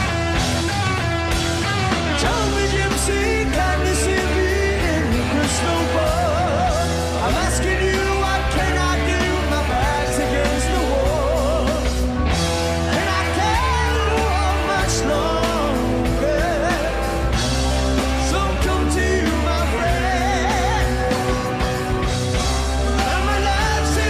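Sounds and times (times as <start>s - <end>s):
hard rock band playing live: 0.0s - 24.0s
person singing: 2.2s - 12.2s, 12.9s - 17.3s, 18.0s - 21.7s.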